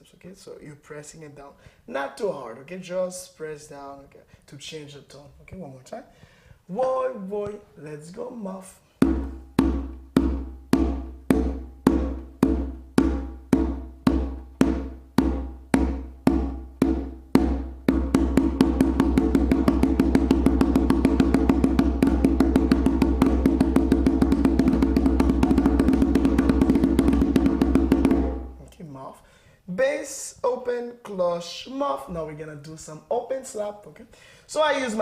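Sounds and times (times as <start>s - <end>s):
hand drum muffled strokes: 9.0s - 28.6s.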